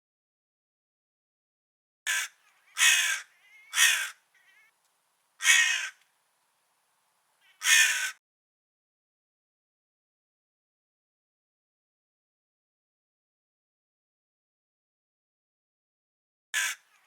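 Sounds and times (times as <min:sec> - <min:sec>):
crow cawing: 0:02.1 - 0:04.8, 0:05.4 - 0:06.0, 0:07.4 - 0:08.2, 0:16.6 - 0:17.0.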